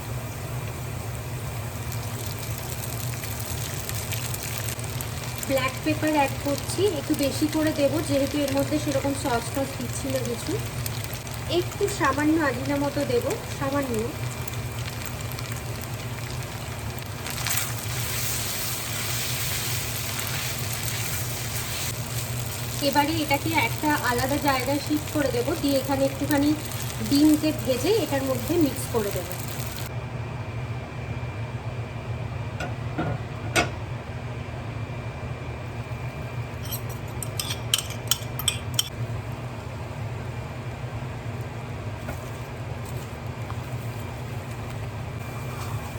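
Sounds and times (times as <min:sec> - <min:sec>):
noodles sizzling in a pan: 0:00.0 - 0:29.9, 0:38.9 - 0:45.9
steady low hum: 0:00.0 - 0:45.9.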